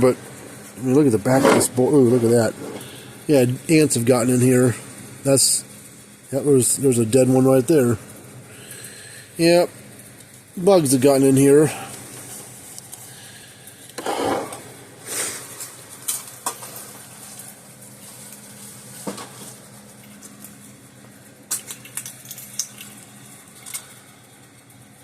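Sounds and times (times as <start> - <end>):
short scrapes: 1.3 - 3.0, 14.0 - 15.4.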